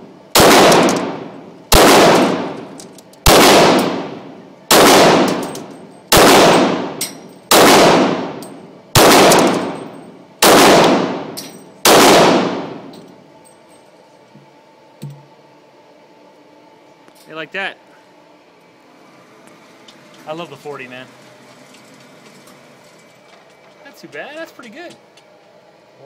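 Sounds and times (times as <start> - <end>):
pistol shots ringing: 0.4 - 8.4, 9.0 - 12.9.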